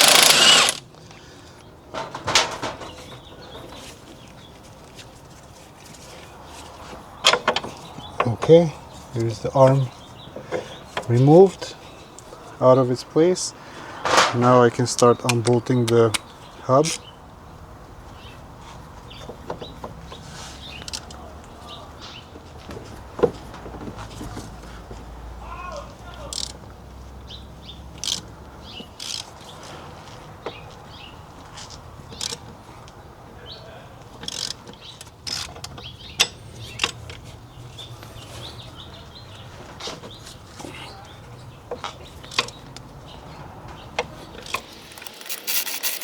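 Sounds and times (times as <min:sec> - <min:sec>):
hand tools clicking and knocking: 0:00.0 - 0:00.8, 0:26.3 - 0:26.6, 0:28.0 - 0:28.3, 0:28.9 - 0:29.4, 0:31.6 - 0:33.0, 0:34.2 - 0:37.3, 0:44.0 - 0:46.0
metal knocks and clunks: 0:01.9 - 0:03.2.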